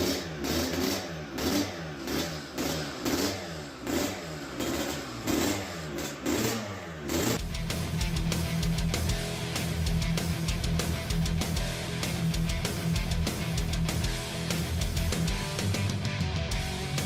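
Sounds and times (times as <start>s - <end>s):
motorcycle engine revving: 0.0s - 17.0s
guitar music: 7.4s - 17.0s.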